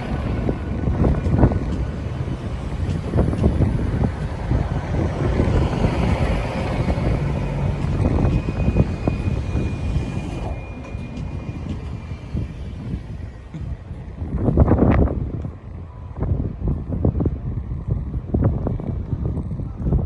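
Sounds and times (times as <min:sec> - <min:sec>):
high whine: 0:00.0 - 0:16.0
train rumbling: 0:00.0 - 0:19.8.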